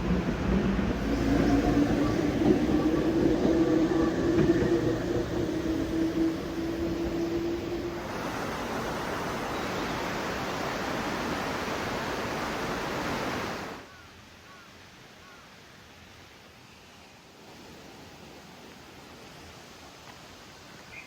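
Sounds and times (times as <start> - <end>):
rushing river water: 0.0 - 13.9.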